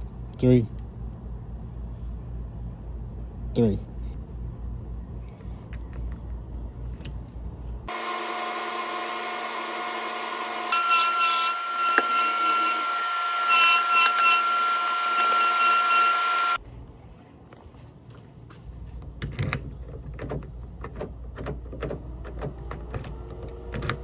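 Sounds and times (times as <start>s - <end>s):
key-cutting machine whining: 7.9s - 16.6s.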